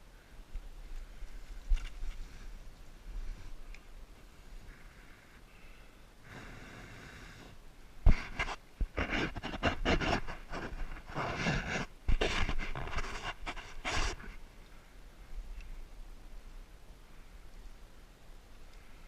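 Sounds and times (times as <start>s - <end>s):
person panting heavily: 8.1s - 14.3s.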